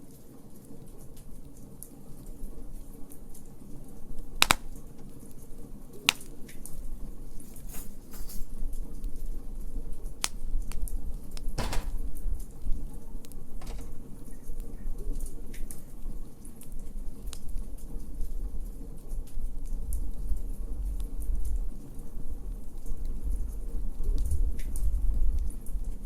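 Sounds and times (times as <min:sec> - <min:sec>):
wood fire crackling and popping: 0:04.3 - 0:05.2.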